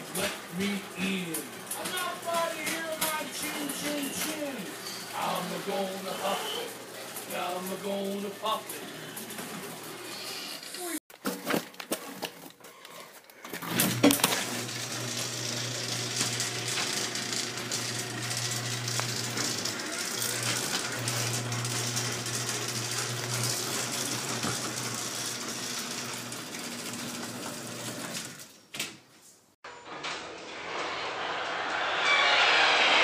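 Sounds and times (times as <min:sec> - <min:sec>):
garage door opener motor hum: 0:00.0 - 0:10.8, 0:13.6 - 0:28.6
garage door opener click: 0:13.6 - 0:28.9.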